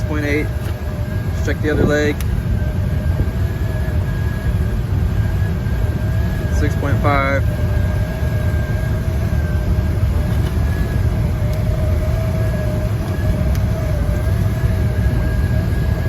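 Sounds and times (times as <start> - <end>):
rooftop air unit humming: 0.0 - 16.0.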